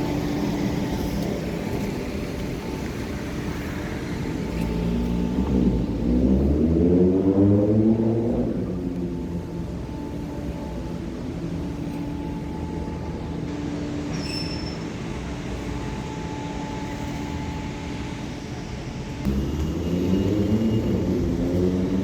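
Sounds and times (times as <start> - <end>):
vehicle engine rumble: 0.0 - 13.5, 19.3 - 22.0
high squeal: 14.0 - 15.3, 19.3 - 22.0.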